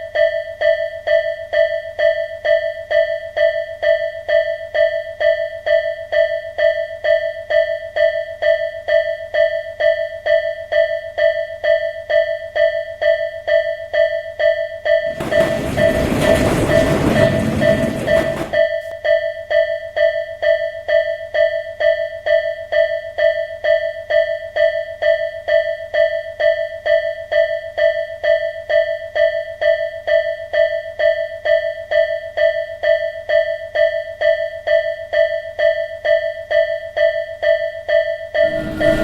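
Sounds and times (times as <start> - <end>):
level crossing warning bell: 15.0 - 18.9, 38.4 - 39.0.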